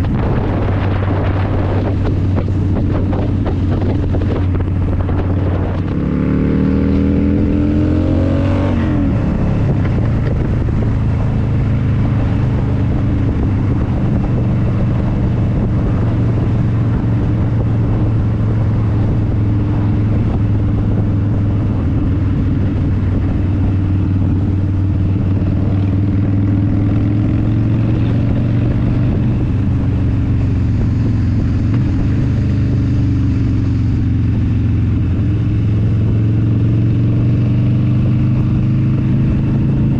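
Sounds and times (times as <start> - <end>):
motorcycle engine: 0.0 - 39.9
wind and road noise: 0.0 - 39.9.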